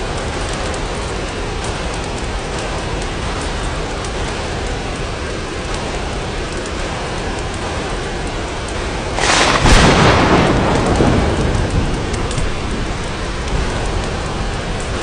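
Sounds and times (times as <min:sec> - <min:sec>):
rain: 0:00.0 - 0:15.0
thunderclap rolling: 0:09.0 - 0:15.0.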